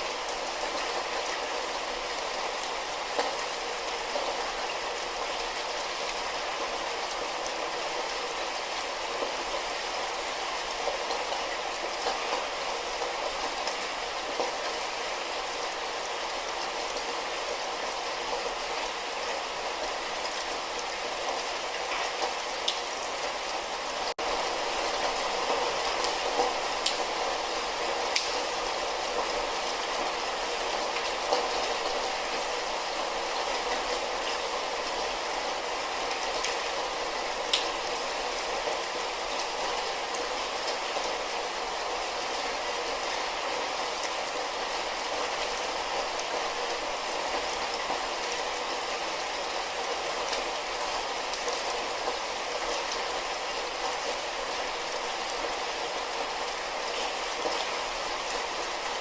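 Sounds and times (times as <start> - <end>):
light rain falling: 0.0 - 59.0
raindrop ticks: 26.0 - 27.1, 28.1 - 28.4, 37.5 - 37.7.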